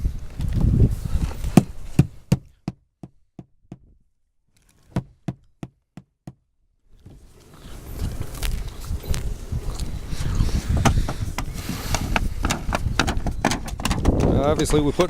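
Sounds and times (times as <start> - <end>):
hammering nails on roof: 4.9 - 6.4, 12.2 - 14.8.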